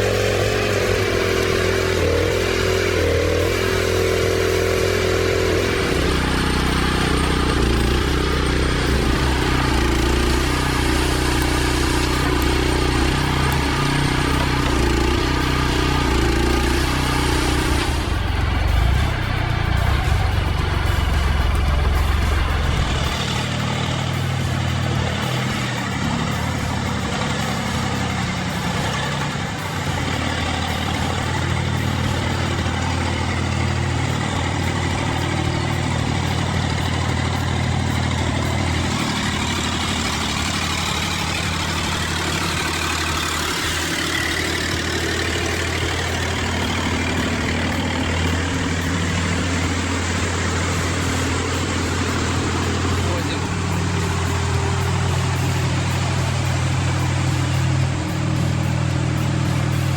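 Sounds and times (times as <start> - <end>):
heavy machinery engine running: 0.0 - 59.9.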